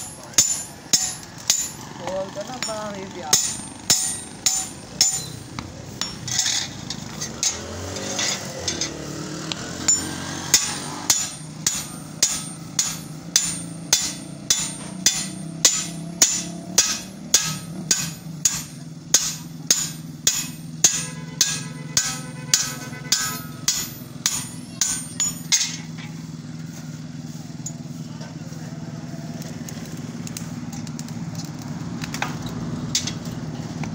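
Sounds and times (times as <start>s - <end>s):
hammering: 0.0s - 26.2s.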